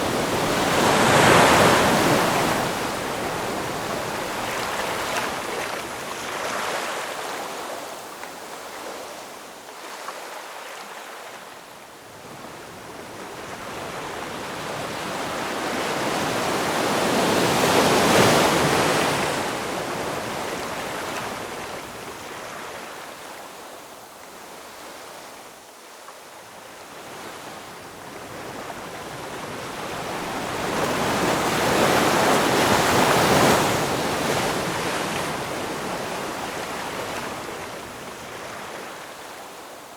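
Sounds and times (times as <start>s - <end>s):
ocean waves breaking: 0.0s - 7.6s, 29.6s - 39.2s.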